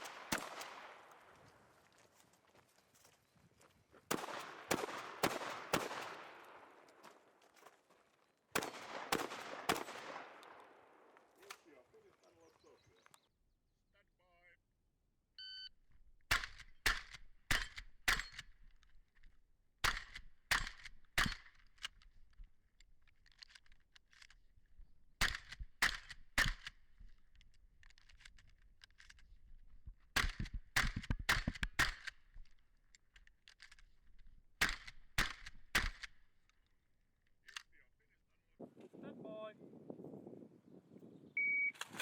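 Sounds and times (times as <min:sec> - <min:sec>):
shotgun shots: 0:00.0 - 0:01.4, 0:04.1 - 0:07.2, 0:08.6 - 0:11.7, 0:16.3 - 0:18.4, 0:19.8 - 0:21.5, 0:34.6 - 0:36.1.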